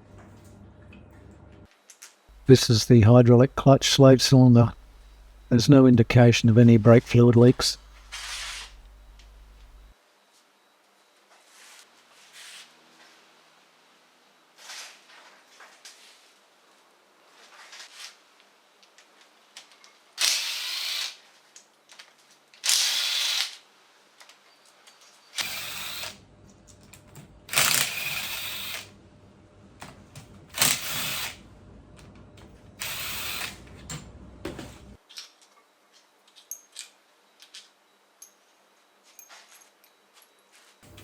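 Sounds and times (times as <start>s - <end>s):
cordless power driver spinning: 7.9s - 9.8s.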